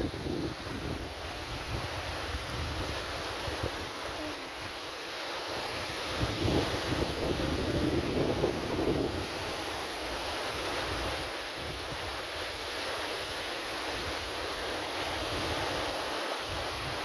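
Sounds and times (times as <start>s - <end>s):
wind gusting on microphone: 0.0s - 4.8s, 5.6s - 12.2s
sea surf washing in: 0.0s - 17.0s.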